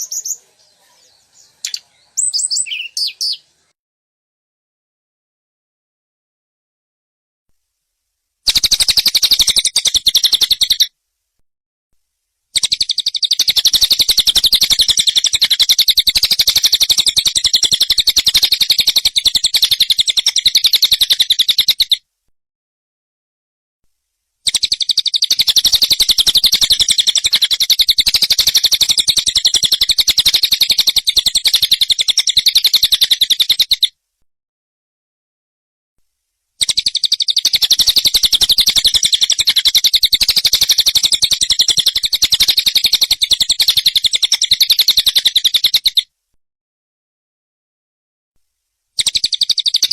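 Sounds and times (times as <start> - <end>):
bird rattling trill: 8.5 - 10.9, 12.6 - 22.0, 24.5 - 33.9, 36.6 - 46.0, 49.0 - 49.9.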